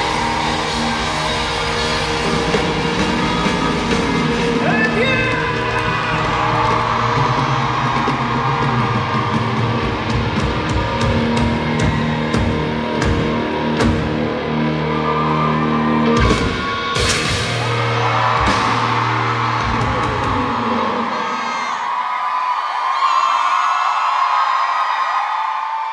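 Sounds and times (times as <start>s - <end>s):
drum kit: 0.0s - 14.5s, 16.0s - 20.9s
electric guitars: 0.0s - 21.8s.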